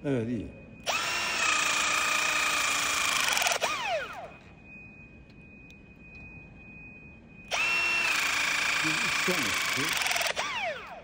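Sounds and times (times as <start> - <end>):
hydraulic crimper motor whine: 0.8 - 4.4, 7.5 - 11.0.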